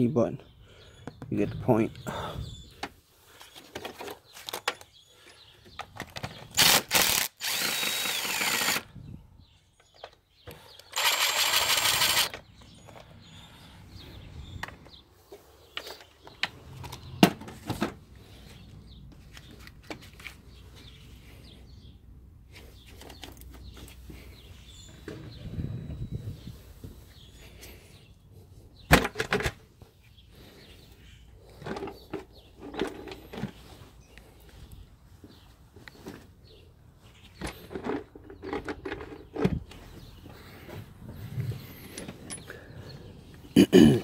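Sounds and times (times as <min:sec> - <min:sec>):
handheld power tool whirring: 0:06.5 - 0:09.0, 0:10.8 - 0:12.4.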